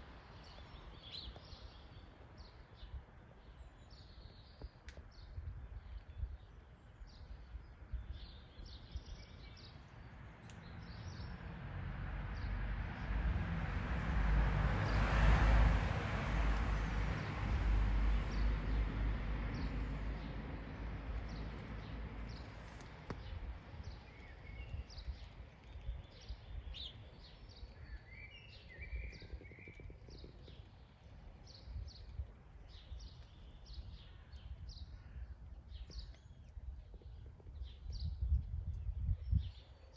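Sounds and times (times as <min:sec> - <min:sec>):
small birds chirping: 0:00.3 - 0:11.4, 0:19.5 - 0:39.9.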